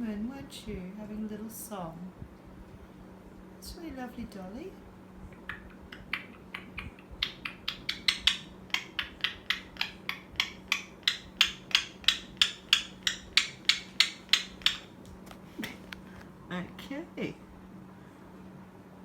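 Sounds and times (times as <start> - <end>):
sharp tapping: 6.0 - 16.0.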